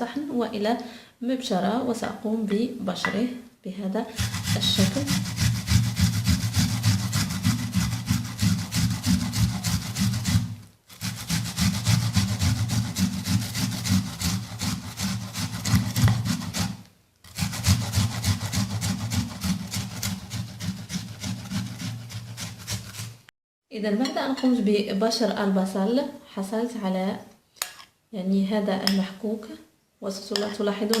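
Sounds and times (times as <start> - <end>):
onion rasping on a grater: 4.2 - 23.3.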